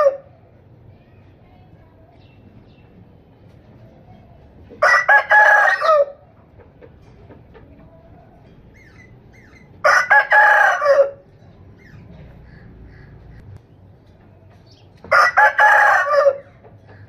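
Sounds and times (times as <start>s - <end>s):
rooster crowing: 0.0s - 0.3s, 4.8s - 6.2s, 9.8s - 11.2s, 15.1s - 16.5s.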